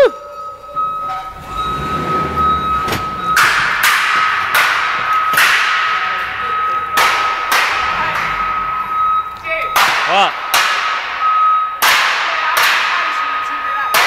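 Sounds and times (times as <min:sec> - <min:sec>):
steady high-pitched tone: 0:00.0 - 0:10.4
metal racking crashing: 0:02.2 - 0:09.0, 0:09.7 - 0:14.0.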